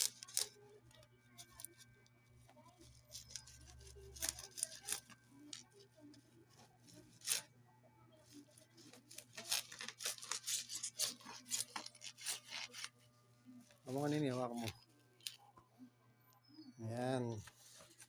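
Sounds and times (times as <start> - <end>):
packaging being torn open: 9.0 - 12.9.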